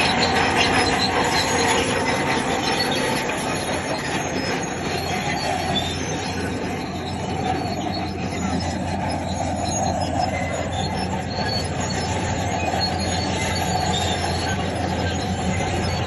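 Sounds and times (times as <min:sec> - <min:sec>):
bulldozer engine hum: 0:00.0 - 0:16.0
crawler tracks squealing and clattering: 0:00.0 - 0:16.0.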